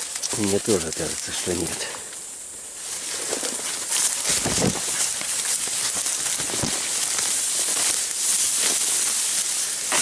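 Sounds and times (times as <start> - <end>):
dry grass rustling underfoot: 0.0 - 10.0
dull footfalls: 3.2 - 8.0.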